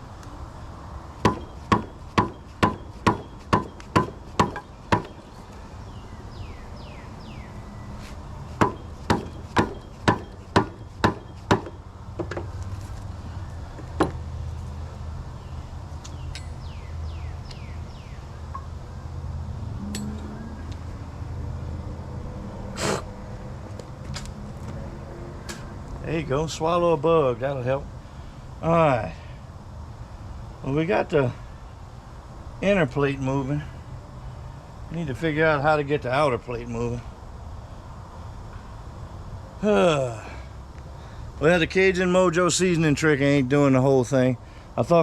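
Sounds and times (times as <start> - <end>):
hammer striking metal: 1.2 - 5.2, 8.6 - 12.4, 19.8 - 20.4.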